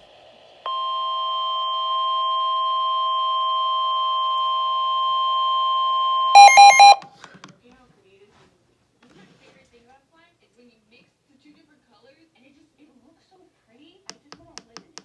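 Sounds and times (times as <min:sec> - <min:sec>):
loud multi-tone beeps: 0:00.7 - 0:07.0
steady alarm tone: 0:00.7 - 0:07.0.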